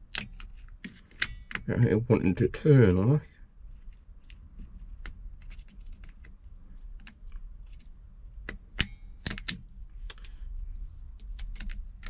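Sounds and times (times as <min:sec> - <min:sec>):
metallic clicks and taps: 0:07.8 - 0:10.3.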